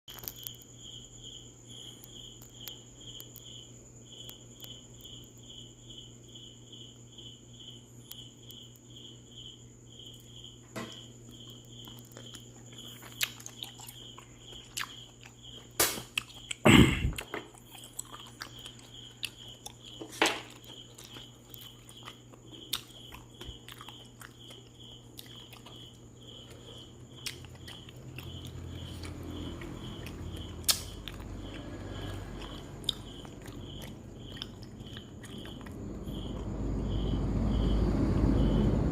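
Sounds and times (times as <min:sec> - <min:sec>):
person chewing: 0:11.3 - 0:36.5
low hum: 0:28.6 - 0:38.9.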